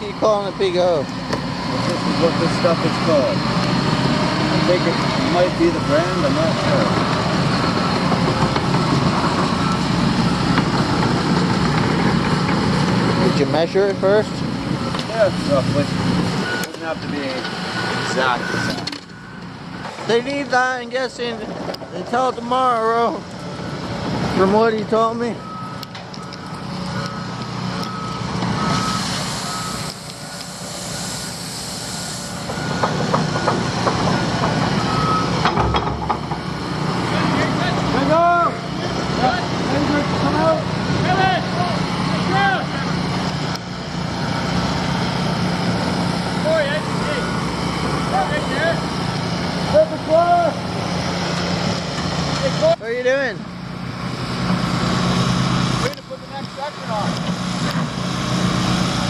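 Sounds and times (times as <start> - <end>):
diesel engine idling: 0.0 - 59.0
backup alarm beeps: 4.7 - 11.0, 14.7 - 19.8, 25.0 - 31.4, 32.0 - 35.7
metal clanks and knocks: 35.4 - 36.6.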